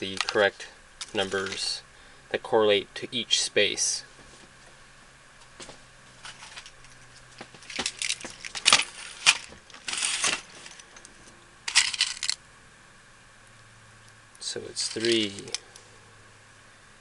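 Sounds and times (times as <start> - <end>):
small metal clicks and rattles: 6.3 - 12.4, 14.8 - 15.6.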